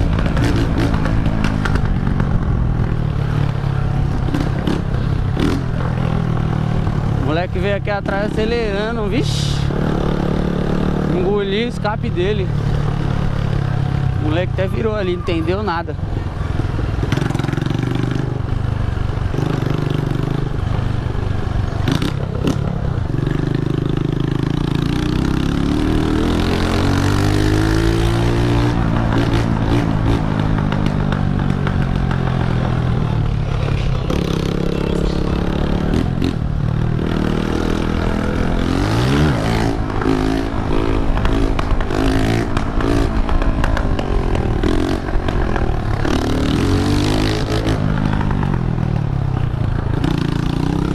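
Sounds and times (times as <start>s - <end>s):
motorcycle engine revving: 0.0s - 50.9s.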